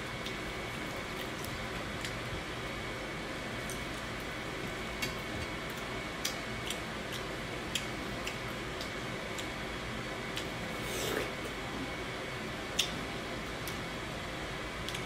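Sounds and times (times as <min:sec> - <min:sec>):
eating clicks close to microphone: 0:05.0 - 0:09.6, 0:12.7 - 0:13.0.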